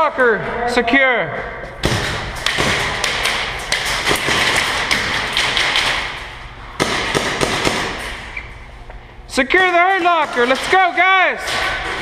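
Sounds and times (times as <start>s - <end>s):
airsoft gunshots: 1.8s - 6.2s, 6.8s - 8.1s
pellets striking surfaces: 9.5s - 12.0s.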